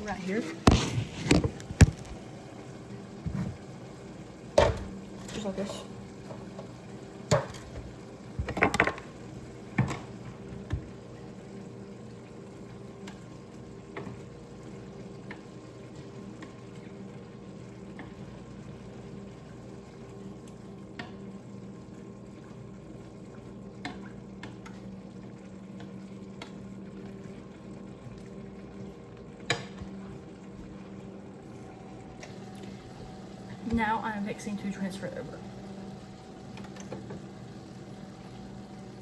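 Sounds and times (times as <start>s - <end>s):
meat frying in a pan: 0.0s - 39.0s
steady low hum: 28.5s - 39.0s.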